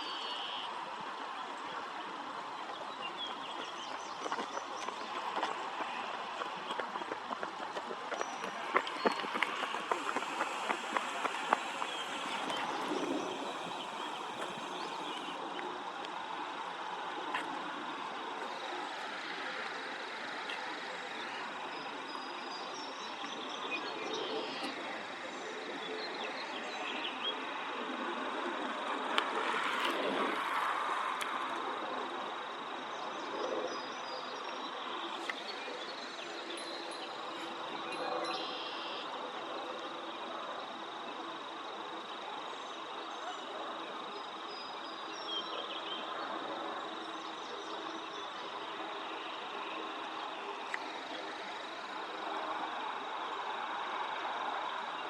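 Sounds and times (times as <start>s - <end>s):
faint bird chirps: 0.0s - 0.7s, 33.9s - 39.7s
outdoor rushing ambience: 3.6s - 22.4s
thin high whine: 8.2s - 15.6s.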